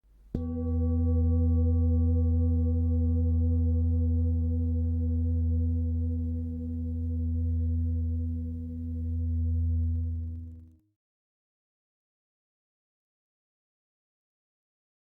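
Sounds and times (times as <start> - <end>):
deep low hum: 0.2 - 10.8.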